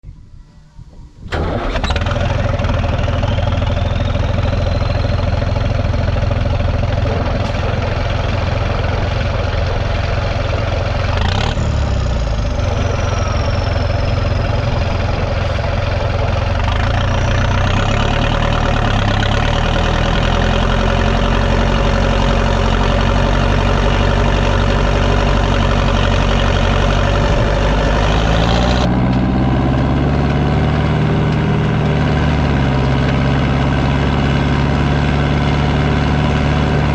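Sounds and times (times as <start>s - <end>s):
diesel tractor engine running: 1.2s - 36.9s
turbocharger whistle: 2.8s - 6.3s, 11.2s - 19.4s.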